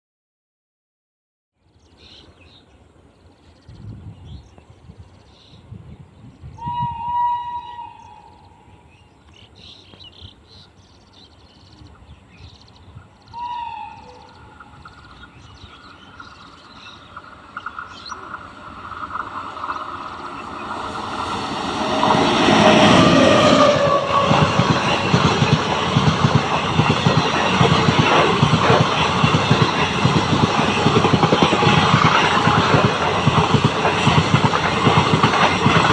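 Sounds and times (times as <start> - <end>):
train horn blasts: 6.6 - 8.5, 13.3 - 14.5
train wheels clattering: 14.7 - 35.9.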